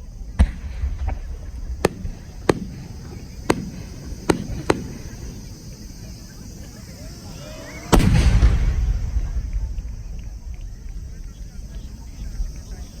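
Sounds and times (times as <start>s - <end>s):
fireworks bursting: 0.0s - 6.6s.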